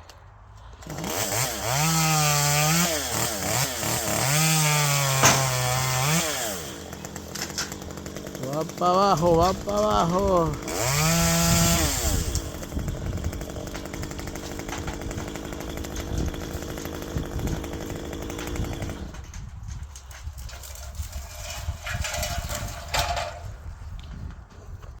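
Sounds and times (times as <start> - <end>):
chainsaw engine running: 0.8 - 19.3.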